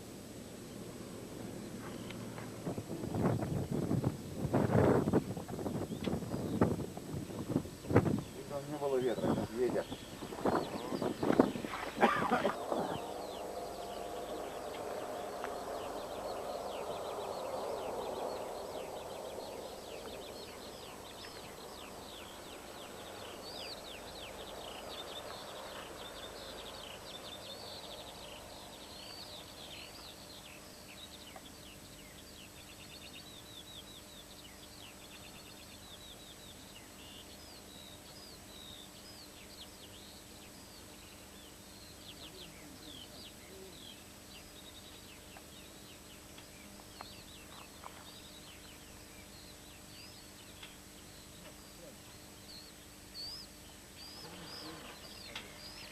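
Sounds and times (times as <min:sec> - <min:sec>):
low rumbling noise: 0:00.0 - 0:33.0
small birds twittering: 0:00.0 - 0:55.9.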